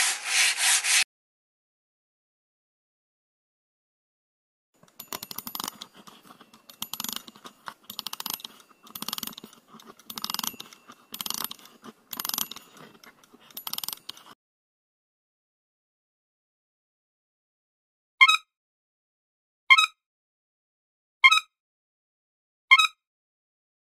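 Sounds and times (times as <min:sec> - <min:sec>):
toy ratcheting clicks: 0:04.8 - 0:14.4.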